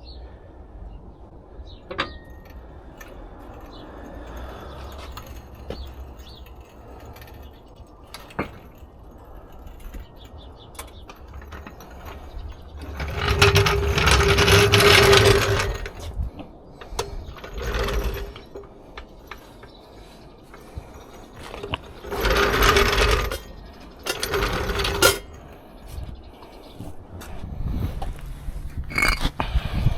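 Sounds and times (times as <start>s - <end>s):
tools ratcheting and rattling: 1.9s - 16.2s, 16.8s - 25.6s.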